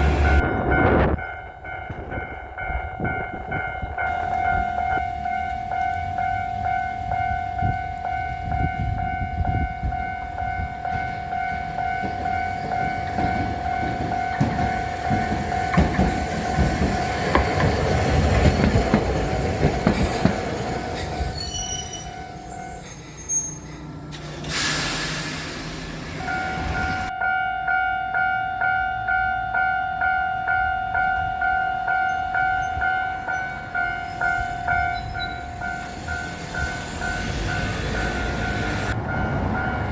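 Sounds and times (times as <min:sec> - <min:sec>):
level crossing warning bell: 0:00.0 - 0:19.9, 0:20.6 - 0:24.2, 0:26.2 - 0:39.9
tram wheels rumbling on rails: 0:00.0 - 0:27.8, 0:28.6 - 0:39.9
short hiss: 0:24.2 - 0:25.9.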